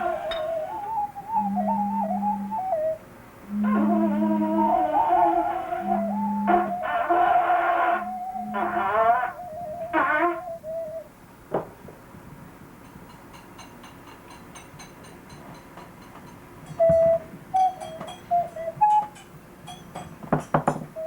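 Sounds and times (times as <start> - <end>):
audio feedback squeal: 0.0 - 11.1, 16.7 - 19.8
knock: 11.5 - 11.7, 20.0 - 20.9.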